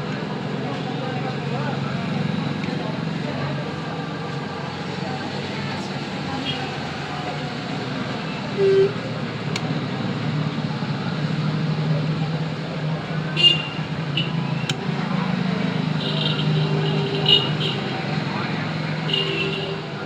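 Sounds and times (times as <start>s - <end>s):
short low tone: 8.6s - 9.0s.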